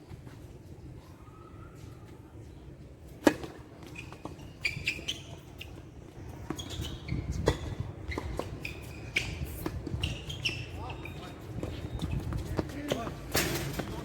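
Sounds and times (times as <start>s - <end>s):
short high squeaks: 3.8s - 5.8s, 6.5s - 12.2s.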